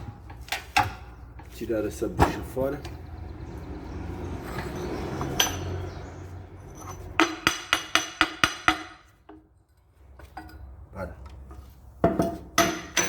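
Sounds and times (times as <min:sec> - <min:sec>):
hammer striking metal: 0:06.8 - 0:09.0.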